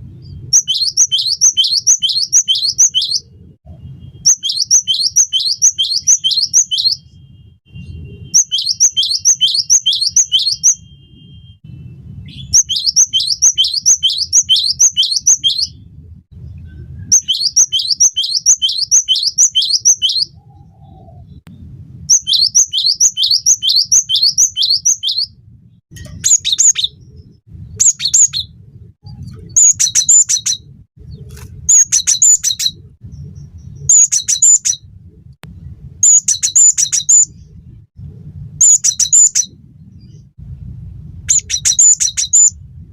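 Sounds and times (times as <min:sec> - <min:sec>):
bird singing high notes: 0:00.5 - 0:03.3, 0:04.2 - 0:07.2, 0:07.8 - 0:11.3, 0:12.3 - 0:15.8, 0:17.1 - 0:21.1, 0:22.1 - 0:25.4.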